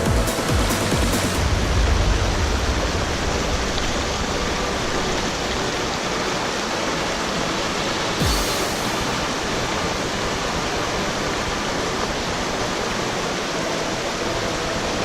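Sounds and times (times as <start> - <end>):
low bump: 0.0 - 5.8
stream rushing over rocks: 0.3 - 15.0.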